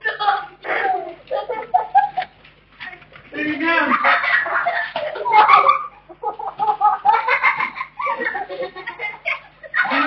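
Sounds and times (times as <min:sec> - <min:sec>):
children crying and shouting: 0:00.0 - 0:02.2.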